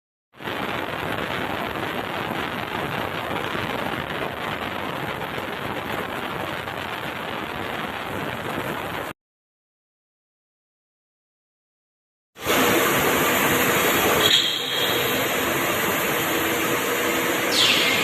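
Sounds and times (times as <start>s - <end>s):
water rushing in washing machine: 12.4s - 18.0s.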